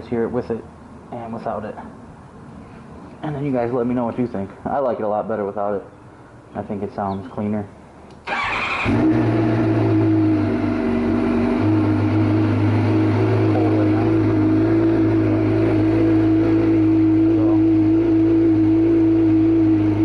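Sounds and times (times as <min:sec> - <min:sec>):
motorcycle engine idling: 0:08.4 - 0:20.0.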